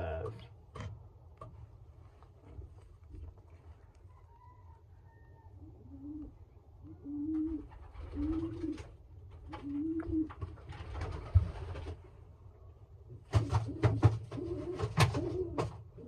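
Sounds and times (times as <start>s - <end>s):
rustling: 1.5s - 4.1s
pigeon cooing: 4.3s - 10.6s, 13.3s - 16.0s.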